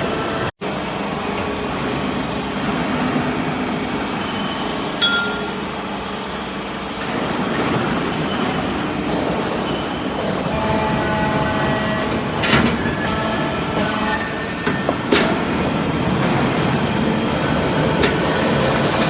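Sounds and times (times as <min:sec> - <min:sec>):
hydraulic baler running: 0:00.0 - 0:19.0
sharp metallic clank: 0:05.0 - 0:05.7.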